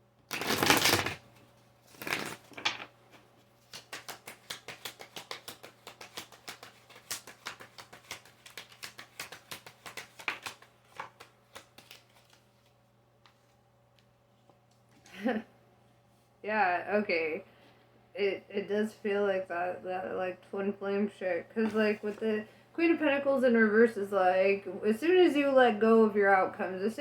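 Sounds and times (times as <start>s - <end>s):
cards riffling: 0.3s - 1.2s, 1.9s - 2.9s, 3.6s - 12.7s
card clicks and slaps: 3.6s - 12.4s.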